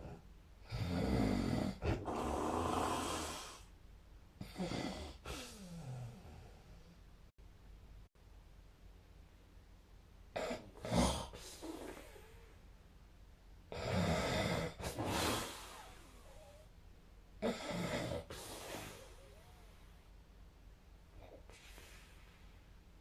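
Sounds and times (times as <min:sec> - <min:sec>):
person snoring: 0:00.6 - 0:03.7, 0:04.4 - 0:06.8, 0:10.4 - 0:12.6, 0:13.7 - 0:16.7, 0:17.4 - 0:20.0.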